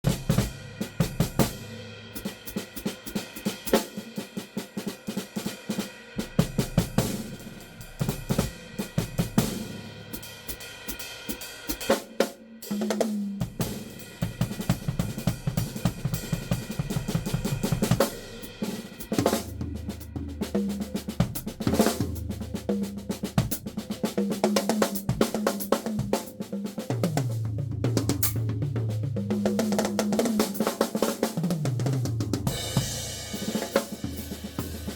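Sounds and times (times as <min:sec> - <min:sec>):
bass drum: 0:00.0 - 0:01.7, 0:06.2 - 0:10.5, 0:13.4 - 0:30.6, 0:31.4 - 0:34.9
snare drum: 0:00.0 - 0:34.9
hi-hat: 0:00.1 - 0:12.0.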